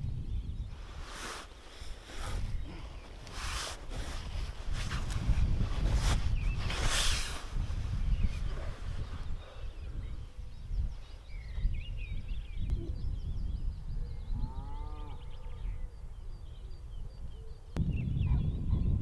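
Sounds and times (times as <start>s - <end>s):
wind rumble on microphone: 0.0s - 19.0s
birds chirping and singing: 0.3s - 19.0s.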